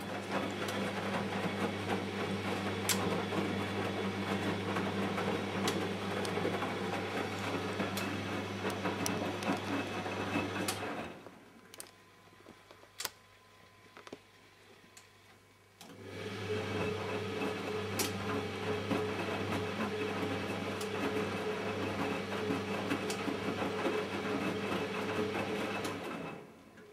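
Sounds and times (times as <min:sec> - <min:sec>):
washing machine drum turning: 0:00.0 - 0:10.9, 0:16.4 - 0:26.0.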